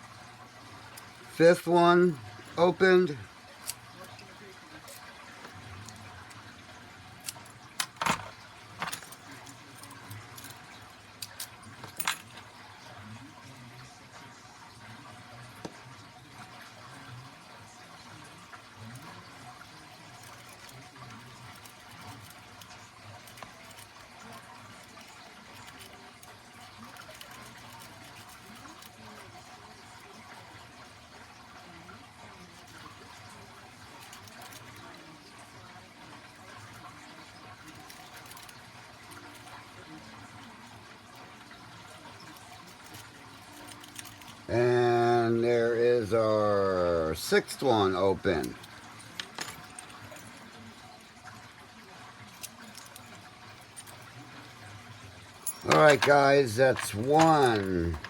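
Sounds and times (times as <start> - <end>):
metal clinks and clanks: 7.2 - 12.6, 48.4 - 50.7, 55.3 - 58.0.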